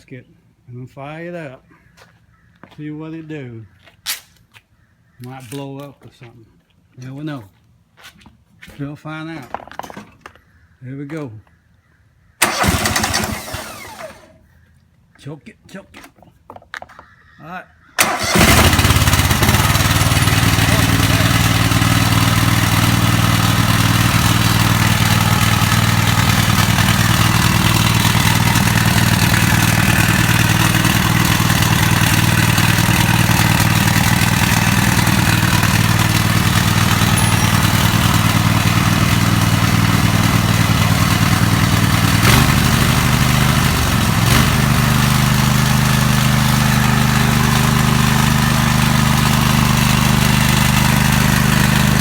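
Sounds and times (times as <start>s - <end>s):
lawn mower engine running: 12.4s - 14.4s, 18.0s - 52.0s.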